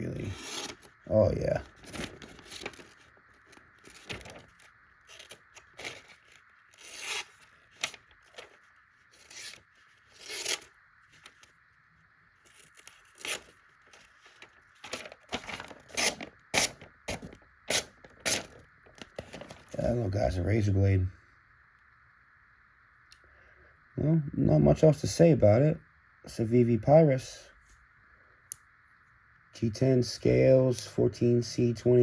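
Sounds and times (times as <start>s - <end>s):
knife cutting paper: 0.1s - 0.9s, 5.1s - 8.5s, 9.2s - 10.7s, 12.6s - 13.5s, 14.8s - 18.6s.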